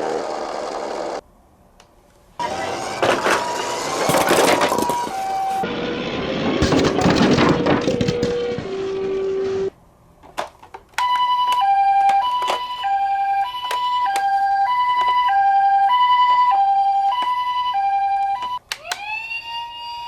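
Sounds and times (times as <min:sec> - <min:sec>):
two-tone ambulance siren: 0:02.4 - 0:06.6, 0:11.0 - 0:20.0
siren wail: 0:02.4 - 0:06.7, 0:11.0 - 0:20.0.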